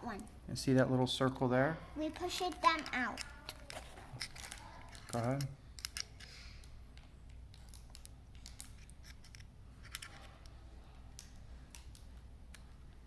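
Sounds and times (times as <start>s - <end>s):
metallic clicks and scrapes: 7.5s - 10.6s.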